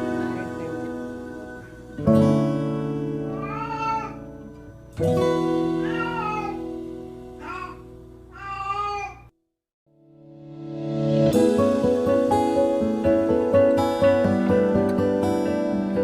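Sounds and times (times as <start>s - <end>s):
acoustic guitar music: 0.0s - 8.7s, 10.3s - 16.0s
cat meowing: 3.3s - 4.2s, 5.8s - 6.6s, 7.4s - 9.3s.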